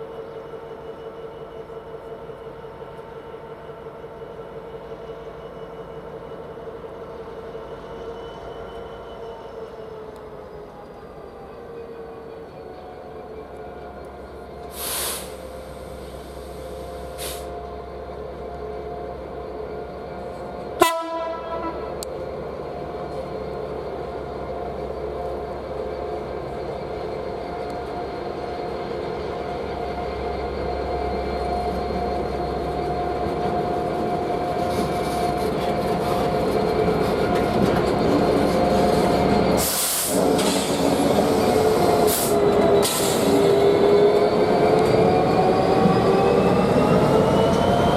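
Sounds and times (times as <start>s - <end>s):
diesel train engine drone: 0.0s - 47.9s
short hissing bursts: 14.7s - 17.5s.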